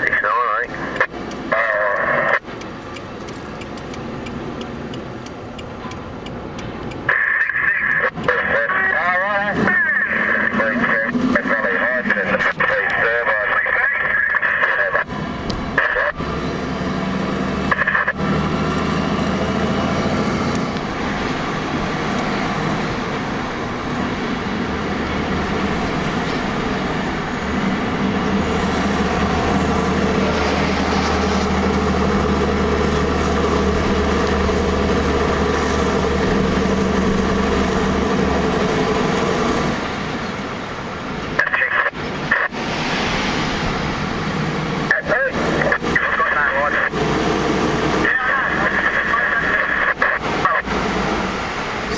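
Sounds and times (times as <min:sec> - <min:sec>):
two-way radio squelch: 0:00.0 - 0:02.5, 0:06.9 - 0:16.2, 0:17.7 - 0:18.2, 0:41.3 - 0:42.7, 0:44.8 - 0:47.0, 0:48.0 - 0:50.8
truck diesel engine droning: 0:00.0 - 0:51.9.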